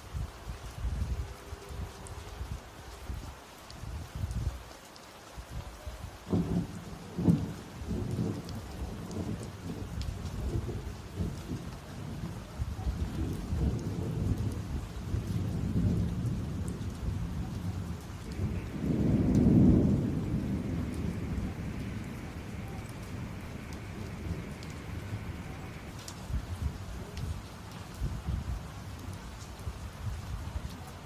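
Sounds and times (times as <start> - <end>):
steady rain: 0.0 - 31.0
thunder rumbling: 13.1 - 27.4.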